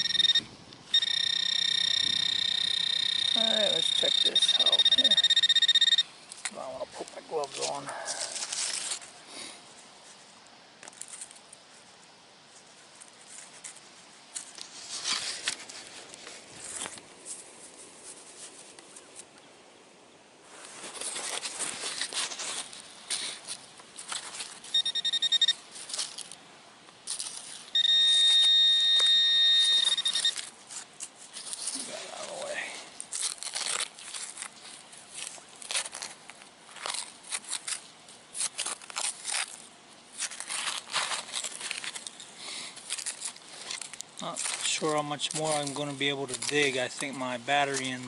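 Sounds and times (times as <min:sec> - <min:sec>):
high buzzing pinpointer tone: 0:00.0 - 0:06.2, 0:24.6 - 0:25.8, 0:27.7 - 0:30.5
hands rustling grass and soil: 0:00.0 - 0:19.6, 0:20.4 - 0:48.0.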